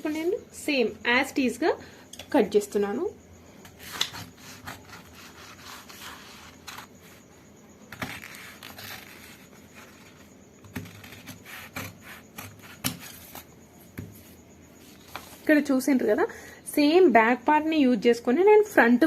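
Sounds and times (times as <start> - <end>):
scissors cutting fabric: 3.8 - 6.9, 7.9 - 13.4.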